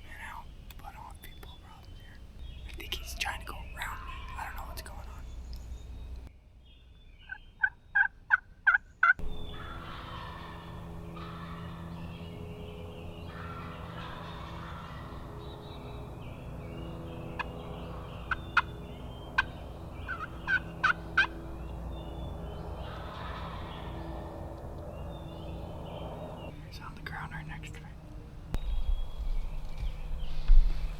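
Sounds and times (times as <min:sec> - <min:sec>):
steady low hum: 0:00.0 - 0:06.3, 0:09.2 - 0:30.9
turkey yelps and clucks: 0:07.3 - 0:11.8, 0:13.3 - 0:15.2, 0:20.1 - 0:21.3, 0:22.8 - 0:23.9.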